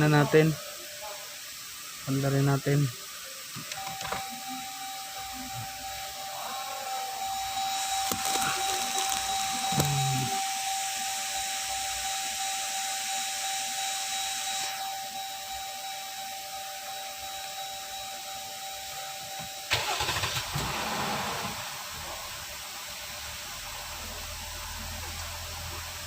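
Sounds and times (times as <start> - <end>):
car engine starting and idling: 19.7 - 22.5.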